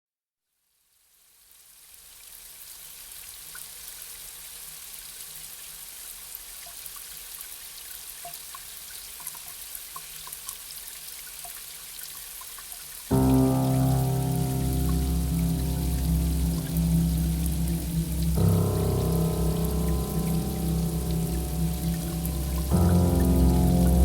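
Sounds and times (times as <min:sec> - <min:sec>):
rain hiss: 0:13.1 - 0:24.0
raindrops pattering: 0:13.1 - 0:24.0.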